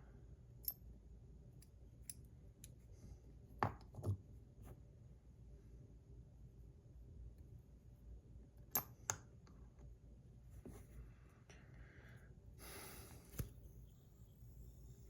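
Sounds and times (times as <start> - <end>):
soft rubbing and rustling: 10.5 - 11.2.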